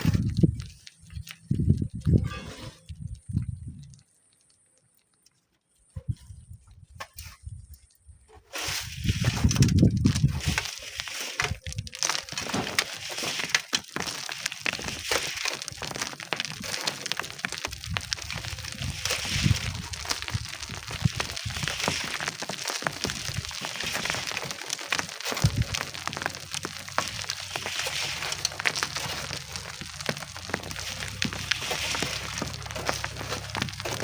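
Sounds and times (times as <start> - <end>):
wind gusts on microphone: 0.0 - 4.0, 8.8 - 10.7, 17.7 - 22.0
sand and stones crunching: 0.0 - 34.0.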